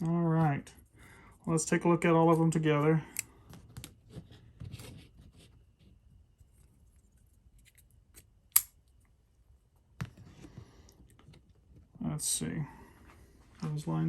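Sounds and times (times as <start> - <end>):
pocket knives clicking and rubbing: 7.6 - 8.8.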